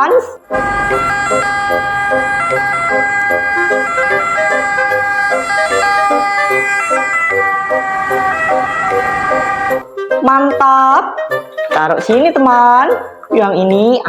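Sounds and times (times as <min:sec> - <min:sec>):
electronic ambulance siren: 0:00.6 - 0:09.9.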